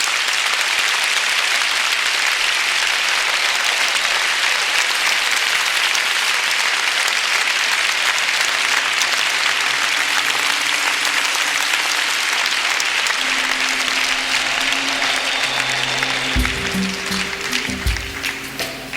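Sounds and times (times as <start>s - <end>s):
audience applauding: 0.0s - 18.9s
quiet music: 9.5s - 18.9s.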